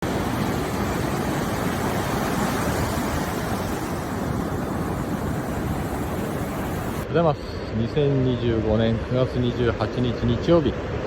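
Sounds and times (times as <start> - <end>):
wind rushing on microphone: 0.0 - 7.1
ocean surf: 0.0 - 11.0.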